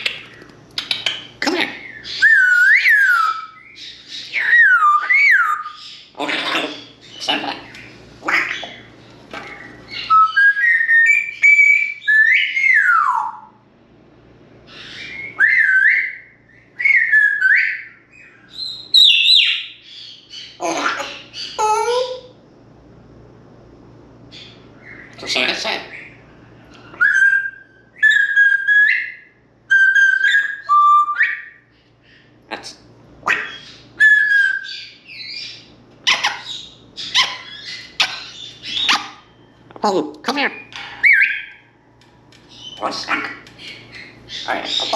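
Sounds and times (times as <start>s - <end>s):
parrot whistling: 1.8s - 7.5s, 9.6s - 13.5s, 14.7s - 19.8s, 26.9s - 31.6s, 33.3s - 39.5s, 41.0s - 41.6s.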